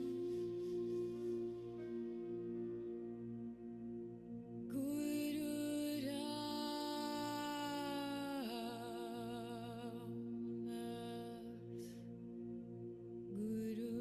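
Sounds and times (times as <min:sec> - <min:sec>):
steady drone: 0:00.0 - 0:07.6.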